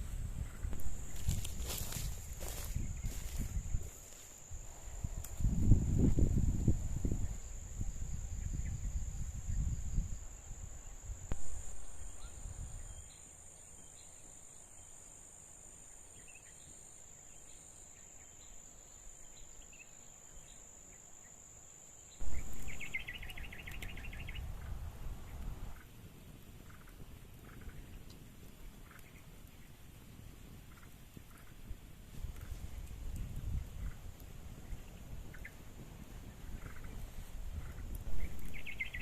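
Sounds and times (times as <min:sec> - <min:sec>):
insects buzzing: 0:00.0 - 0:28.0, 0:28.6 - 0:39.0
rustling and handling noise: 0:00.8 - 0:04.4
rapid chirping trill: 0:22.2 - 0:24.8.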